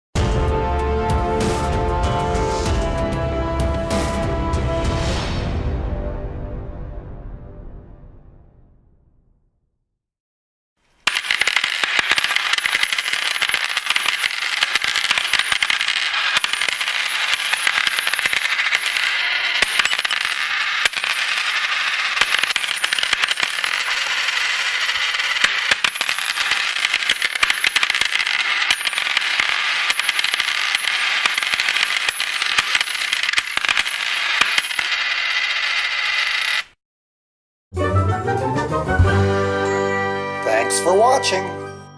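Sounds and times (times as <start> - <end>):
coins falling and jingling: 11.0 - 36.7.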